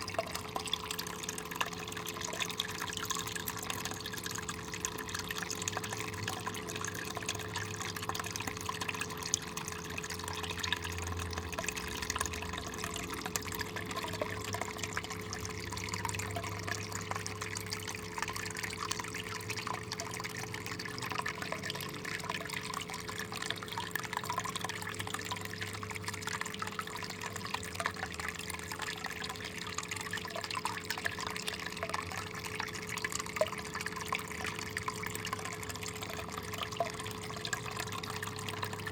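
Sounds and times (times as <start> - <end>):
water trickling and splashing: 0.0 - 38.9.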